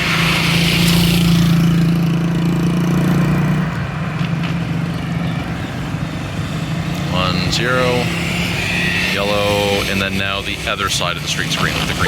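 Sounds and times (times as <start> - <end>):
hiss of passing traffic: 0.0 - 3.2
vehicle engine humming: 0.0 - 12.0.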